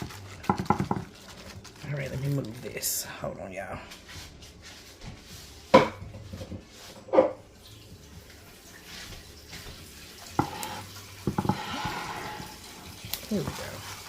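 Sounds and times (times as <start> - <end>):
dishes clinking on counter: 5.8 - 7.4, 10.4 - 12.3.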